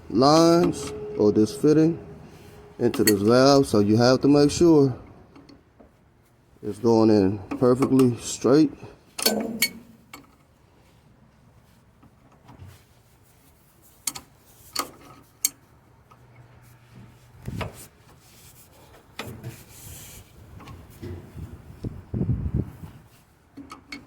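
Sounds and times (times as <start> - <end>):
soft rubbing: 12.7 - 15.8, 16.5 - 21.5.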